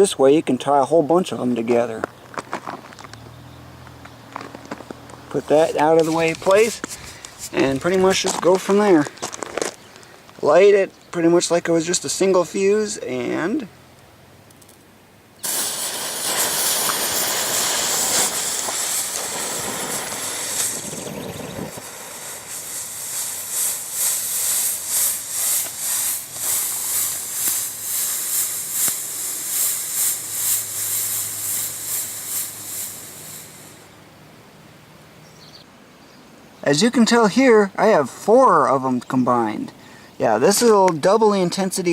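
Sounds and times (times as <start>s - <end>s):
fireworks fuses hissing: 4.4s - 10.3s, 15.4s - 34.0s.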